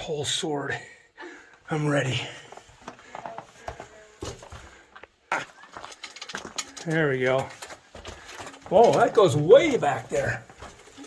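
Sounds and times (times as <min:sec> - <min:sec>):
footsteps on rocky ground: 0:02.4 - 0:11.0.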